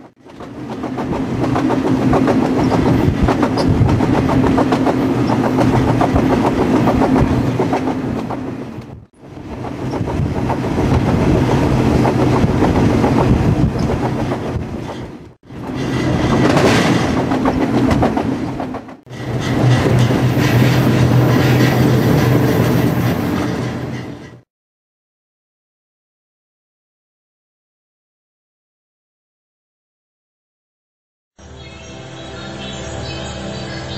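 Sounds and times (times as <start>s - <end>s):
train wheels clacking over rail joints: 0.0s - 24.4s.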